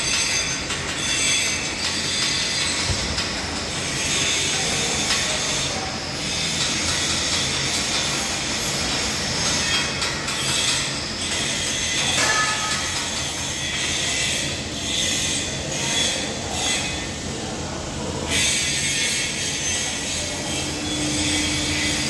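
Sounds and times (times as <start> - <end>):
metal-on-metal screeching machinery: 0.0 - 2.8, 3.7 - 17.2, 18.3 - 22.0.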